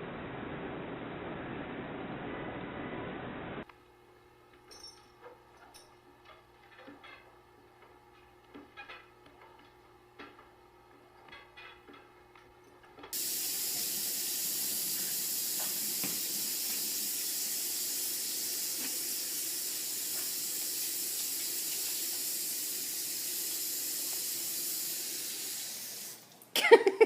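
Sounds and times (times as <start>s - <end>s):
tap water running into sink: 13.1s - 26.4s.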